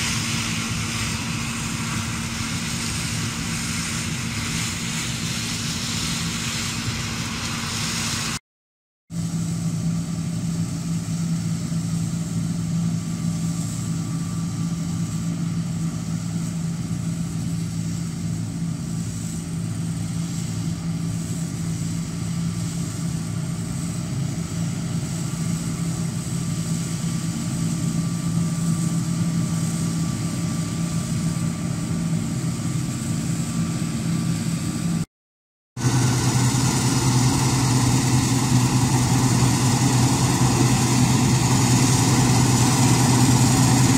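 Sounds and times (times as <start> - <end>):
combine harvester engine humming: 0.0 - 8.4, 9.2 - 35.1, 35.8 - 43.9
faint steady whine: 9.2 - 35.1
low engine hum: 9.2 - 35.1, 35.8 - 43.9.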